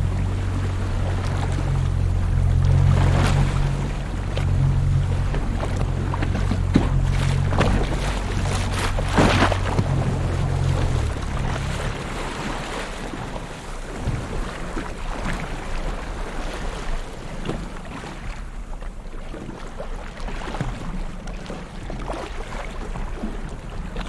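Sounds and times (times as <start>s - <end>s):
low rumble: 0.0s - 15.4s
ocean waves splashing on shore: 0.0s - 24.0s.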